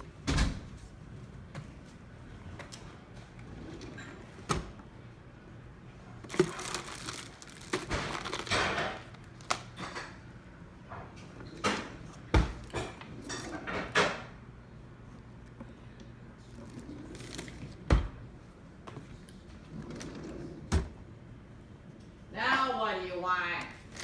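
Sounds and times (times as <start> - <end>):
rustling and scraping: 6.2 - 9.8.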